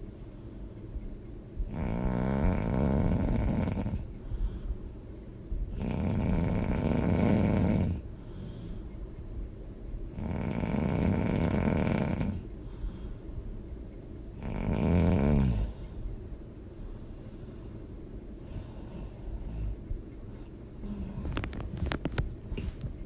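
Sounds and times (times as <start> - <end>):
soft breathing: 0.0 - 1.7, 2.5 - 9.6, 11.6 - 14.2, 15.5 - 23.0
person snoring loudly: 1.7 - 4.0, 5.8 - 8.0, 10.2 - 12.4, 14.4 - 15.8.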